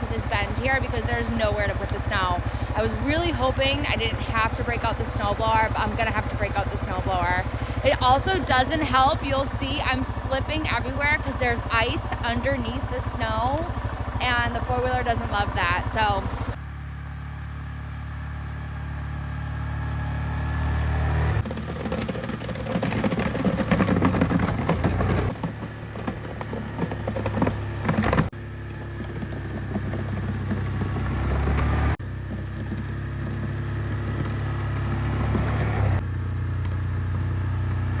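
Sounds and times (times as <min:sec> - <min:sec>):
four-wheeler engine under load: 0:00.0 - 0:38.0
snow crunching and clattering: 0:21.4 - 0:35.8.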